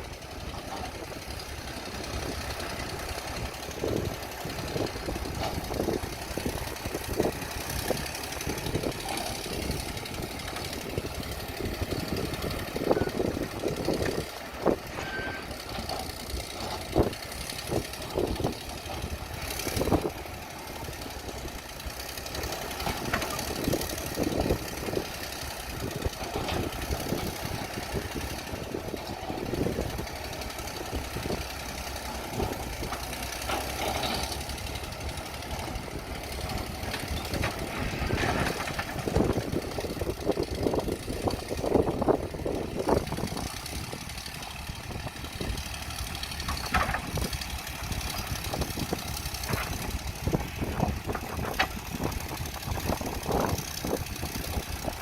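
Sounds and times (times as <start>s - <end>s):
excavator clanks: 0.0s - 55.0s
excavator diesel engine rumbling: 0.0s - 55.0s.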